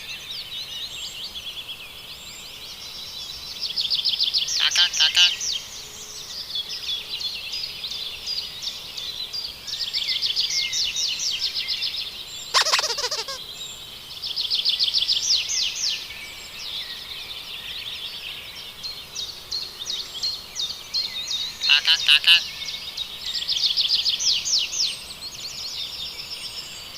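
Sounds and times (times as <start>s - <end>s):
harsh bird call: 12.6s - 13.4s, 21.6s - 22.4s
small birds chirping: 12.6s - 13.5s.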